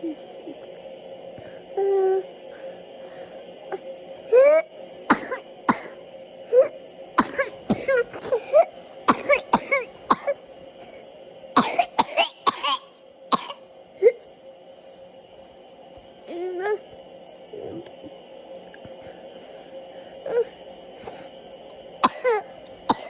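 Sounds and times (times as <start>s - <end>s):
person coughing: 4.3s - 11.0s, 11.6s - 14.2s, 22.0s - 23.0s.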